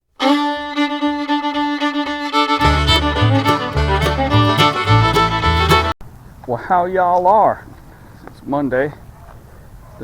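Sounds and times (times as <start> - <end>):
fiddle tune: 0.0 - 6.0
bass and steady beat: 2.1 - 6.0.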